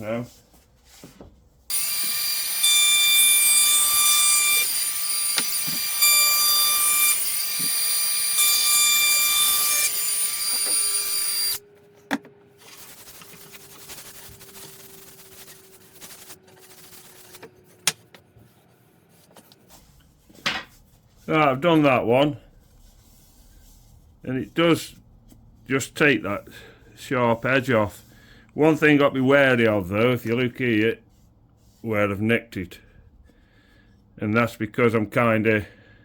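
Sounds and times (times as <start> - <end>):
router whining while cutting: 1.7 - 11.6.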